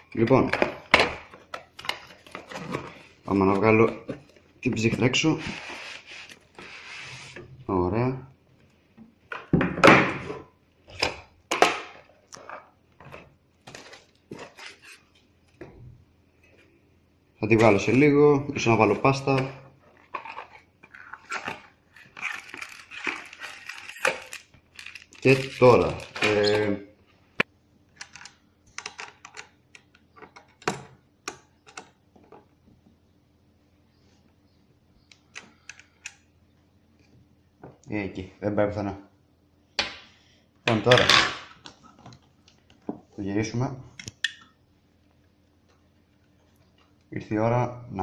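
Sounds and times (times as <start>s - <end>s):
packaging clacks and rustles: 20.0s - 26.6s.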